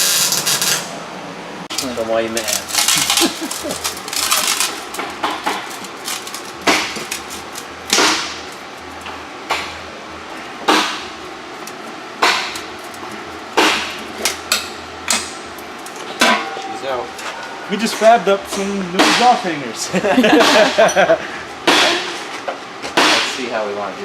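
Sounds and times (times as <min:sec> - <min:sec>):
metal clattering and scraping: 0:01.7 - 0:19.4
hammer striking metal: 0:16.2 - 0:19.5.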